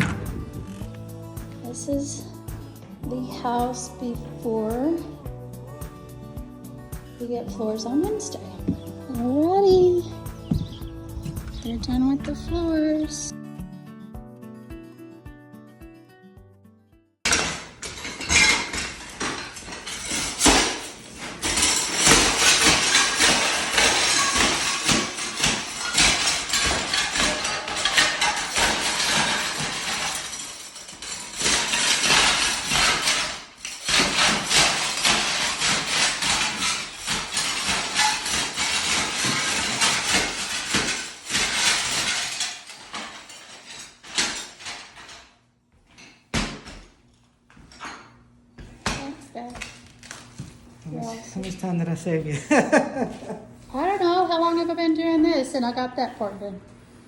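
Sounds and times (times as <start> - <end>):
hammer breaking ceramic tile: 17.3 - 44.5
clattering tile shards: 17.3 - 46.8.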